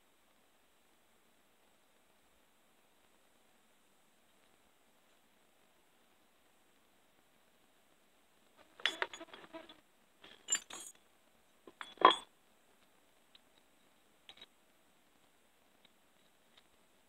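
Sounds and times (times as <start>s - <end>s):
chain parts clinking: 10.2s - 11.0s.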